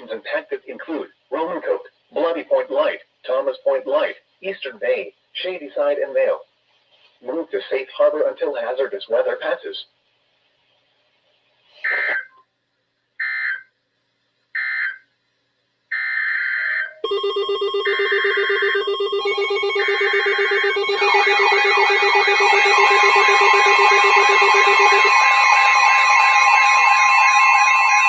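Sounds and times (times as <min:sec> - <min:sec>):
sweeping alarm tones: 0:15.9 - 0:28.0
harsh digital data bursts: 0:17.1 - 0:28.0
steady tones: 0:17.1 - 0:28.0.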